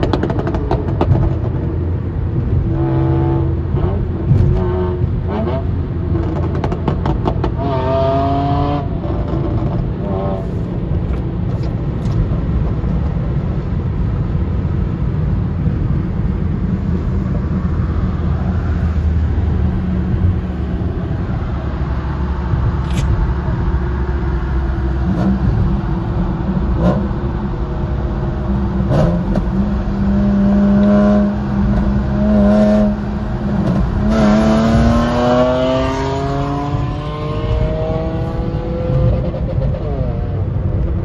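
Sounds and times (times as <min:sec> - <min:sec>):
exhaust crackles and pops: 0:00.0 - 0:01.8
car engine revving: 0:00.0 - 0:10.6, 0:15.0 - 0:40.8.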